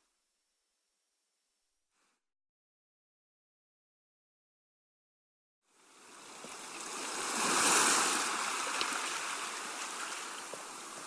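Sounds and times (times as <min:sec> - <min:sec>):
sea wave washing up shore: 0:05.8 - 0:11.0.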